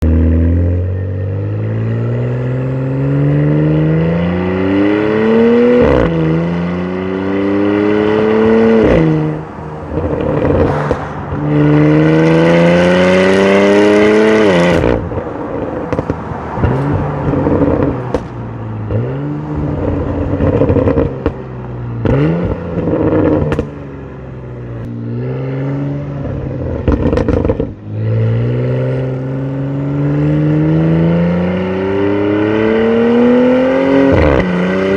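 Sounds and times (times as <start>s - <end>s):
car engine accelerating hard: 0.0s - 23.8s, 24.6s - 34.9s
exhaust crackling and popping: 9.8s - 12.4s, 14.7s - 19.0s, 22.0s - 23.8s, 26.3s - 27.8s.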